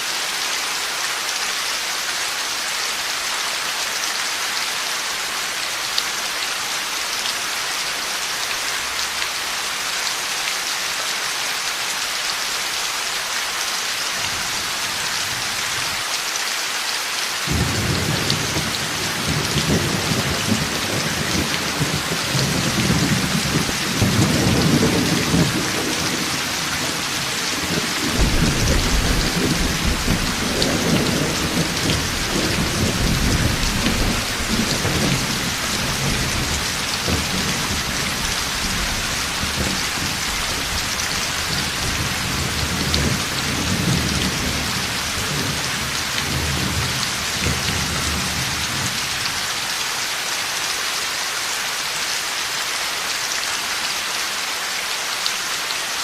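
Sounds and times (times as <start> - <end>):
heavy rain falling: 0.0 - 56.0
thunder rumbling: 17.5 - 45.6.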